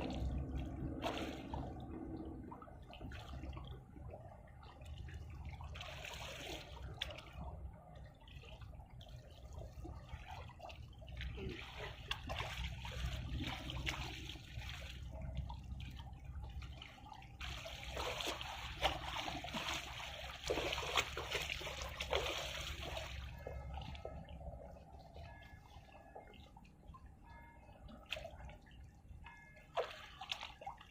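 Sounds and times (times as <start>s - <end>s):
low rumble: 0.0s - 5.8s, 22.6s - 29.3s.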